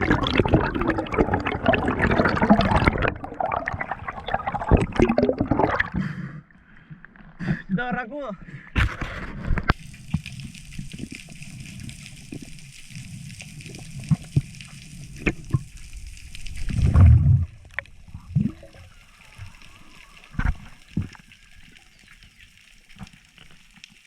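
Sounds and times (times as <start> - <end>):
water sloshing and gurgling: 0.0 - 7.7, 8.7 - 24.0
steady hiss: 9.7 - 16.7.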